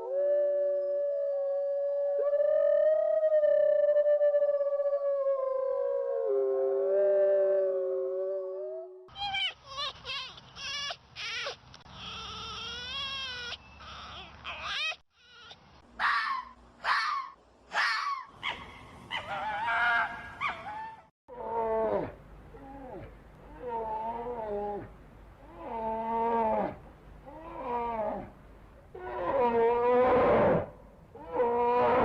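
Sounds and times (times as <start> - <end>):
high-pitched animal calls: 8.4 - 21.8.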